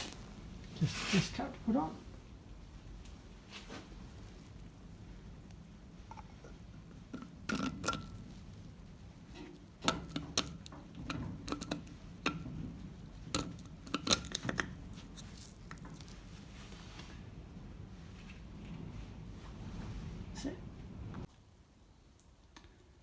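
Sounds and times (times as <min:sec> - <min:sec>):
metal clicks and knocks: 0:09.3 - 0:14.9.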